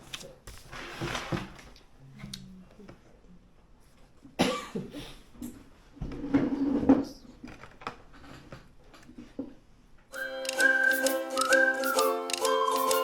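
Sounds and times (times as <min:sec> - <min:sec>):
person coughing: 0:04.4 - 0:05.2.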